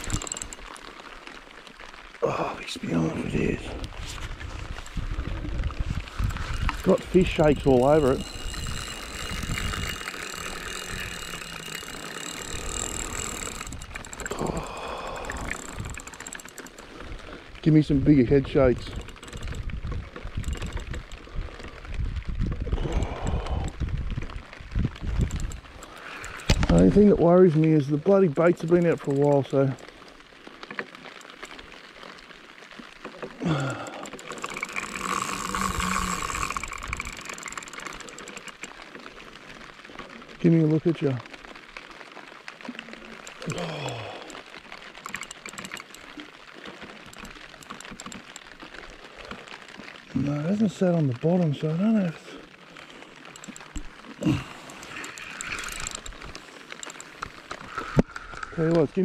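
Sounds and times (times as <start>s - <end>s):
fishing reel clicking: 0.0s - 1.3s, 6.2s - 21.2s, 25.2s - 27.0s, 28.4s - 29.9s, 33.4s - 39.0s, 43.2s - 48.6s, 52.0s - 58.5s.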